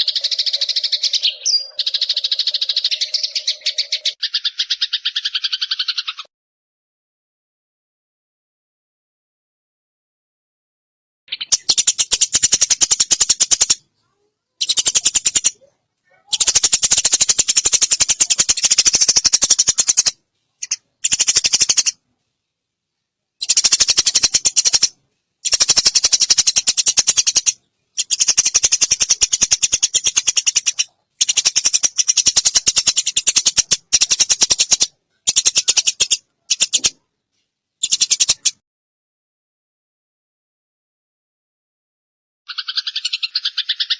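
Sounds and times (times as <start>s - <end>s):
sparrow chattering calls: 0.0s - 6.3s, 11.3s - 13.8s, 14.6s - 22.0s, 23.4s - 37.0s, 37.8s - 38.6s, 42.5s - 43.9s.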